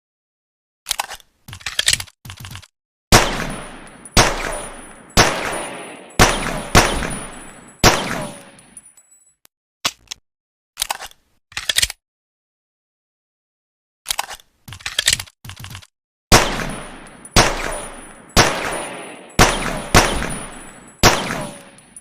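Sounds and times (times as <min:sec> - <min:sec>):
pistol shots: 0:03.1 - 0:08.7, 0:16.3 - 0:22.0.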